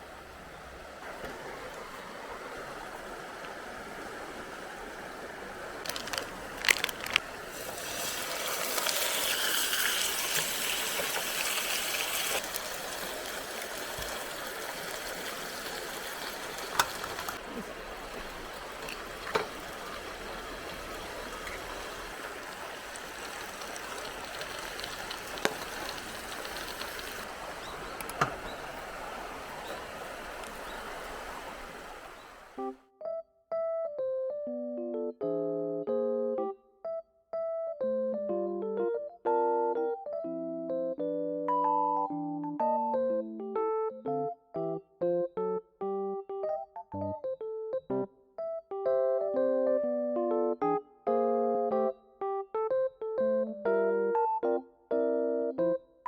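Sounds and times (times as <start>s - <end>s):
stream running: 0.0s - 32.8s
handling clicks and knocks: 5.8s - 7.3s.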